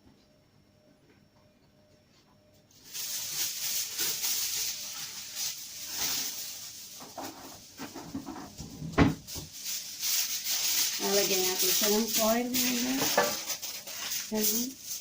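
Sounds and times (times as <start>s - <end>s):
cooking oil spray hissing: 2.8s - 7.8s, 9.2s - 15.0s.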